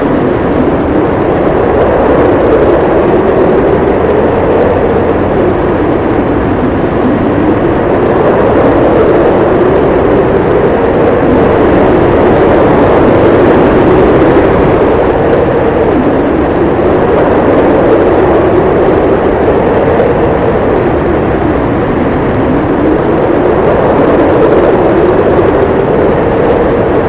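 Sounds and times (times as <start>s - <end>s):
howling snowstorm wind: 0.0s - 27.0s.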